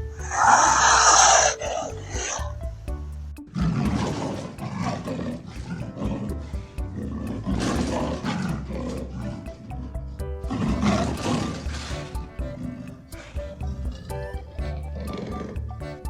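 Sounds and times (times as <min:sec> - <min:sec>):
background music low tones: 0:00.0 - 0:16.0
large animal rough calls: 0:00.1 - 0:02.5, 0:03.5 - 0:16.0.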